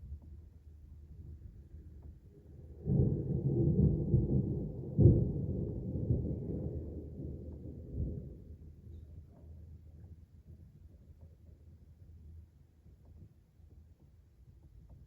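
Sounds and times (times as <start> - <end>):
thunder rumble and crack: 0.2 - 8.9.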